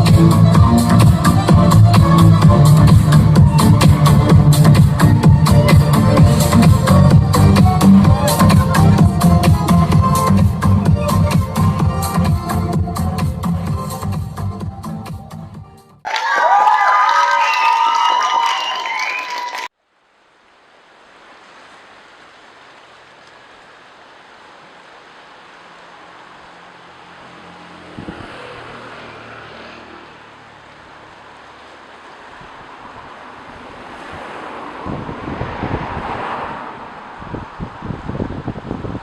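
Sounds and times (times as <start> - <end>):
ocean waves washing in: 20.3 - 39.0
wind buffeting microphone: 32.4 - 39.0.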